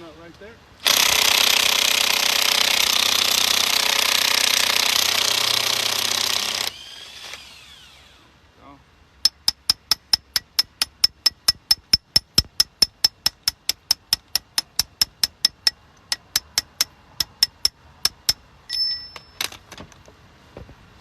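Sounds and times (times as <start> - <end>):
ratchet metallic clicks: 9.2 - 19.4
ringing metal scrape: 18.7 - 19.5.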